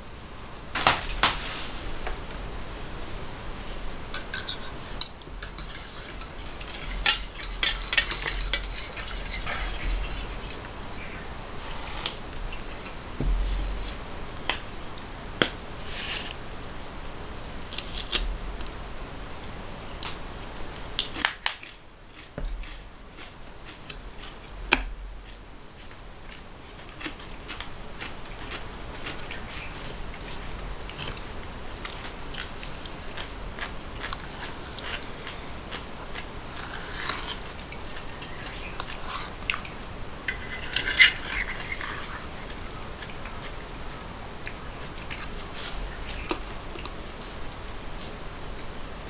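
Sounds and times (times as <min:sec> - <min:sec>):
dense hiss: 0:00.4 - 0:05.6, 0:08.4 - 0:16.8
dishes and cutlery clinking: 0:04.1 - 0:11.1, 0:11.8 - 0:14.6.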